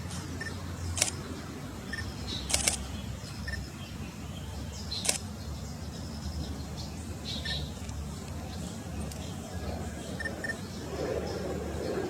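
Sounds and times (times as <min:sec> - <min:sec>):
bird chirping: 0:00.4 - 0:12.0
sharp clicks: 0:01.0 - 0:01.2, 0:02.5 - 0:02.8, 0:05.0 - 0:05.3.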